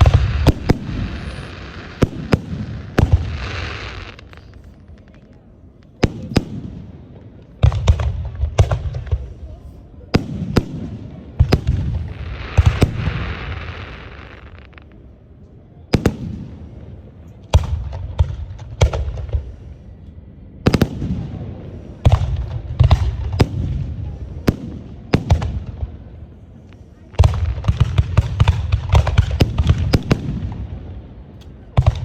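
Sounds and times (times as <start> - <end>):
rapid firework bangs: 0.0 - 4.4, 27.2 - 31.0, 31.8 - 32.0
firework shells booming: 0.0 - 4.6, 27.2 - 30.8.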